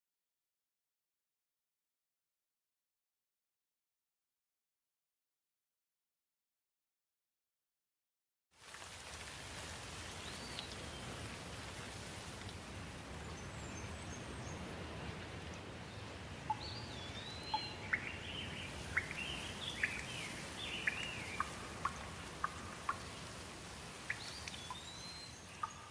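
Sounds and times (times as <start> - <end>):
rain falling: 8.6 - 25.9
faint high bird chirps: 16.5 - 23.0, 24.1 - 25.9.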